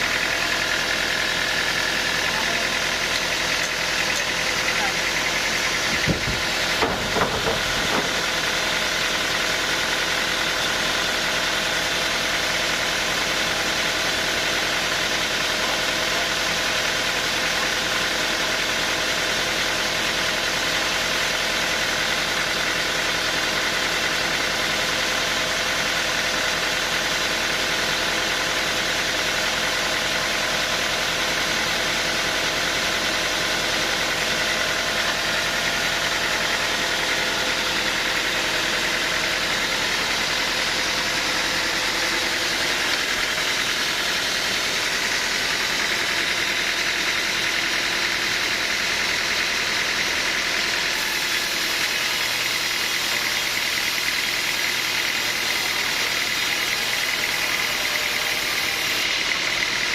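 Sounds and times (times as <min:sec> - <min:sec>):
sawmill machinery droning: 0:00.0 - 0:59.9
sharp knocks: 0:05.9 - 0:08.2.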